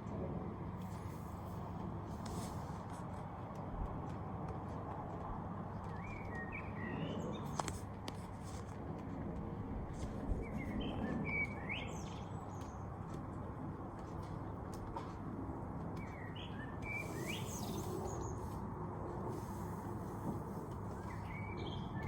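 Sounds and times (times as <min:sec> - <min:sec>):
small birds chirping: 0:05.7 - 0:08.7, 0:09.9 - 0:22.0.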